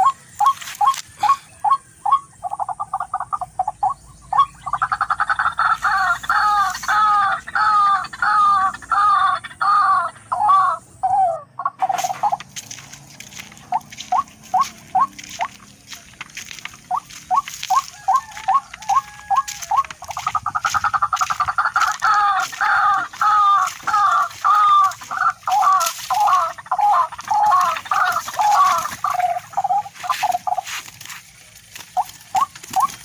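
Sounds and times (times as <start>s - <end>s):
bird calling rising notes: 0.0s - 15.8s.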